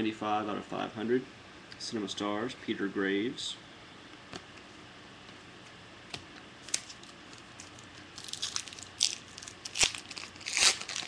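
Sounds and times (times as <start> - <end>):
plastic wrapper crinkling: 6.6 - 11.0.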